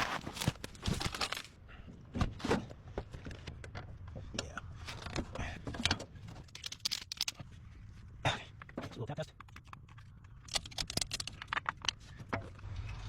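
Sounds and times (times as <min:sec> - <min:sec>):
hands working on metal parts: 0:03.1 - 0:07.5, 0:08.5 - 0:13.0.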